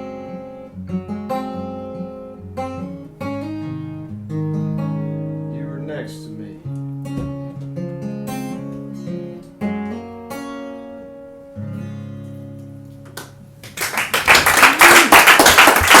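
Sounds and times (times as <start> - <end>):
acoustic guitar picking: 0.0 - 13.6
audience applause: 13.6 - 16.0.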